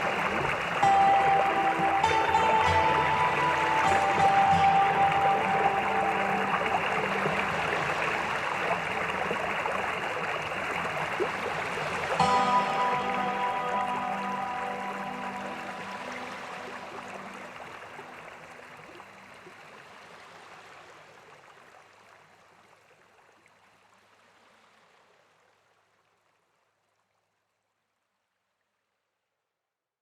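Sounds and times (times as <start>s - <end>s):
fountain water splashing and trickling: 0.0s - 27.8s.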